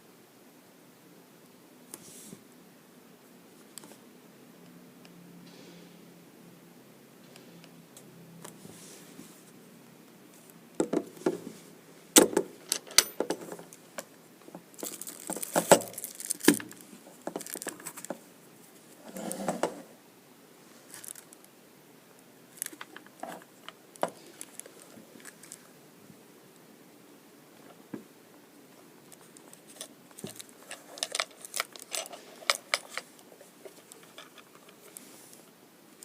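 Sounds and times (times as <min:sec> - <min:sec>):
packaging rustling: 0:14.7 - 0:18.2, 0:29.2 - 0:35.0.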